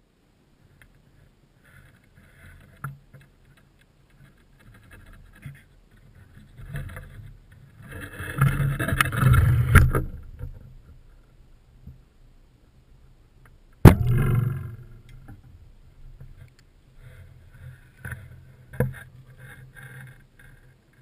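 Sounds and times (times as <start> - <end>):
rustling and scraping: 0.6 - 12.1, 13.4 - 21.0
sharp knocks: 13.8 - 15.3.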